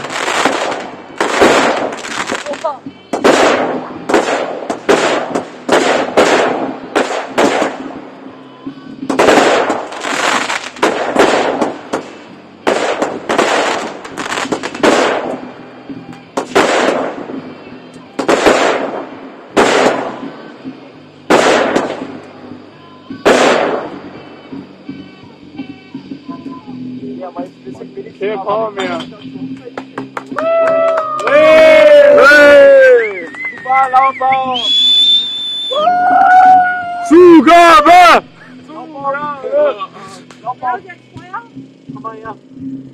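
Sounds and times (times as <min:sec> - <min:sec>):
fireworks bangs: 0:00.0 - 0:24.3
faint music: 0:00.0 - 0:42.9.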